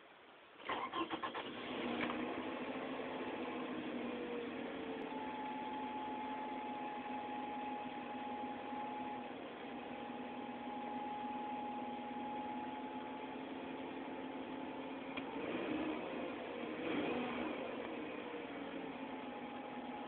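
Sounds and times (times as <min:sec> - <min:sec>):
car engine idling: 0:00.6 - 0:20.0
thin steady whine: 0:03.0 - 0:15.3.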